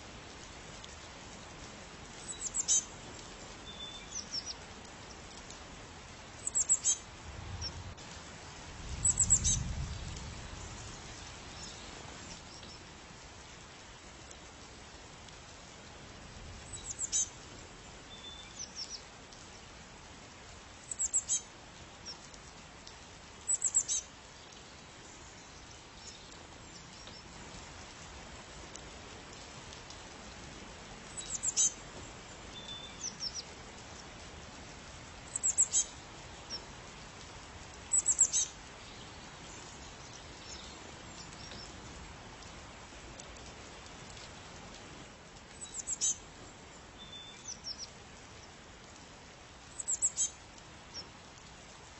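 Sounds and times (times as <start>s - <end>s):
faint background hiss: 0.0s - 51.9s
small bird chirping: 2.2s - 2.9s, 6.4s - 7.0s, 9.0s - 9.7s, 16.7s - 17.3s, 20.9s - 21.4s, 23.5s - 24.0s, 31.1s - 31.8s, 35.3s - 35.9s, 37.9s - 41.7s, 45.6s - 46.2s, 49.8s - 51.1s.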